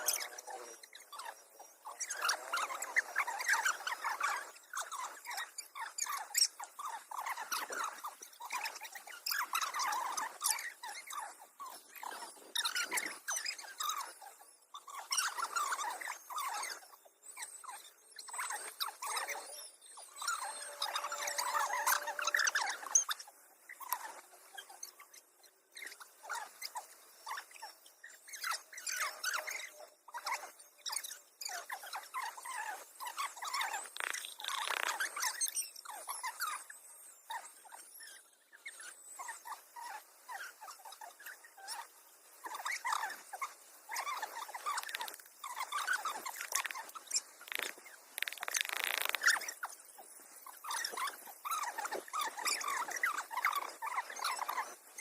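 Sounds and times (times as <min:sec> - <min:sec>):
small animal squeaking and chirping: 0:00.0 - 0:55.0
rapid crackling: 0:46.2 - 0:49.4.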